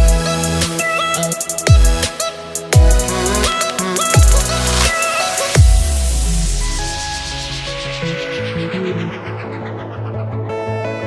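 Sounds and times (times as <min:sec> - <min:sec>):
deep bass note: 0:05.6 - 0:10.6
sustained synth notes: 0:05.6 - 0:11.0.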